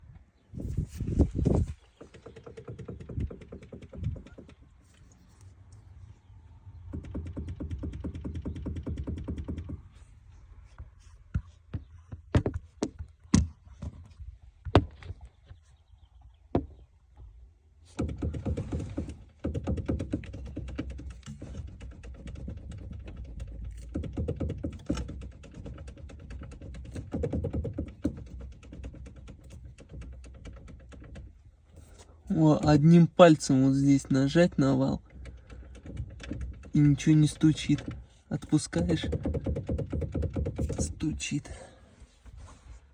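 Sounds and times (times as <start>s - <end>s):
sharp knocks from steering column: 38.9s - 40.9s.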